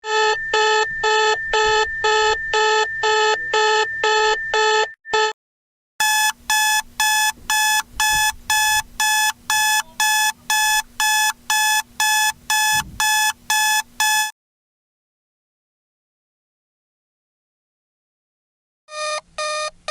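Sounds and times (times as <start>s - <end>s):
electronic alarm beeping: 0.0s - 5.4s, 6.0s - 14.3s, 18.9s - 19.9s.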